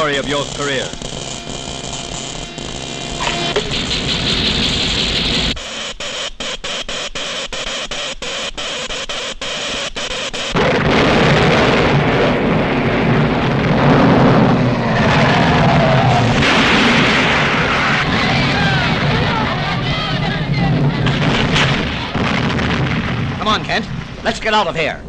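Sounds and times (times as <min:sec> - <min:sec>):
rapid pulsing clicks: 0:00.0 - 0:11.2
earthquake rumble and crashing: 0:10.6 - 0:25.0.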